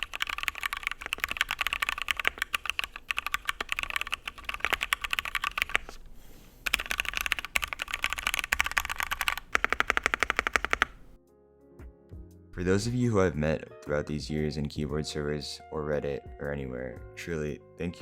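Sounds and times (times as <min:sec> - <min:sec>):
mechanical keyboard typing: 0:00.0 - 0:06.0, 0:06.6 - 0:11.2.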